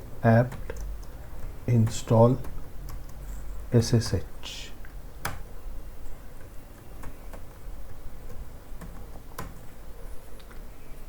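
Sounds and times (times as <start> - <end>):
low steady hum: 0.0 - 11.0
keyboard key clicks: 5.2 - 5.5.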